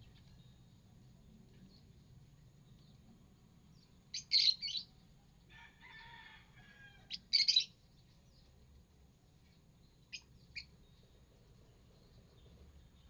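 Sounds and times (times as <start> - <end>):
bird twittering chatter: 4.1 - 4.9, 7.1 - 7.7.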